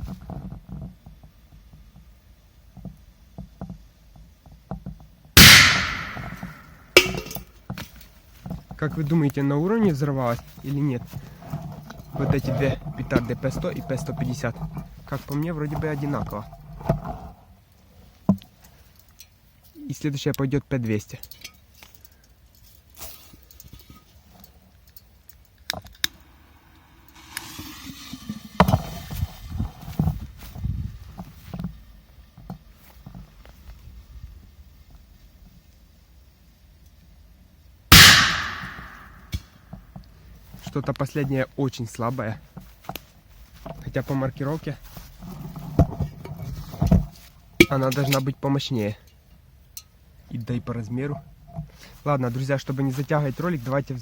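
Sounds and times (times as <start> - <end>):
firecracker bang: 5.4 - 7.4, 37.9 - 39.4
heavy thumps: 5.4 - 7.4
firecracker fuse hissing: 26.4 - 29.6.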